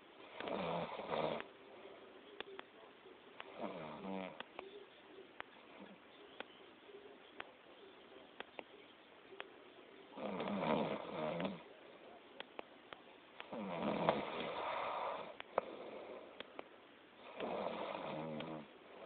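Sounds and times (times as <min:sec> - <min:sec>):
person snoring loudly: 0:10.2 - 0:11.6, 0:13.5 - 0:15.3, 0:17.3 - 0:18.7
faint ticks: 0:18.2 - 0:18.6.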